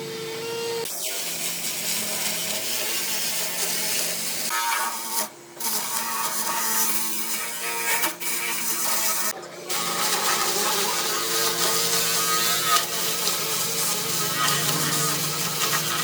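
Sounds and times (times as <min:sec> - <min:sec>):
power tool cutting wood: 0:00.0 - 0:16.0.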